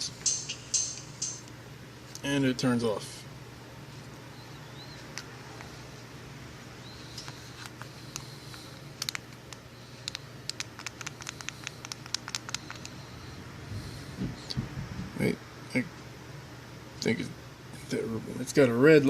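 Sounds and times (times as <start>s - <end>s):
steady low hum: 0.0s - 19.0s
small clicks and scratches: 7.2s - 13.0s.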